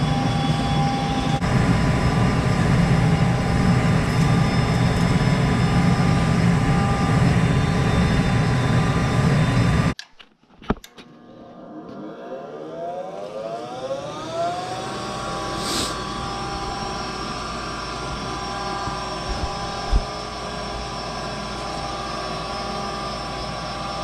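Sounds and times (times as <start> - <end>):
furnace fan motor whining: 0.0 - 10.0, 11.2 - 24.0
short hiss: 15.6 - 16.0.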